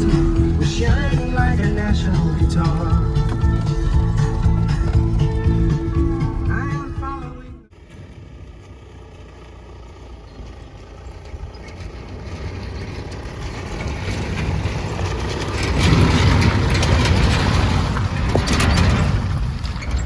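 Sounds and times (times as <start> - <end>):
sharp rattles: 0.0 - 6.8, 10.9 - 20.0
vehicle rumbling over rough ground: 0.0 - 20.0.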